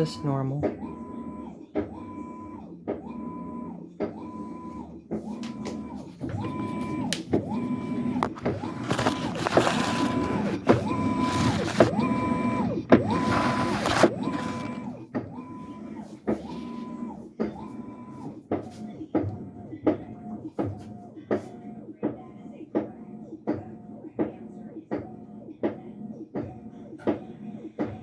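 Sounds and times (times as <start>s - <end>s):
washing machine motor whine: 0.0s - 21.2s
washing machine knocking: 5.2s - 15.6s.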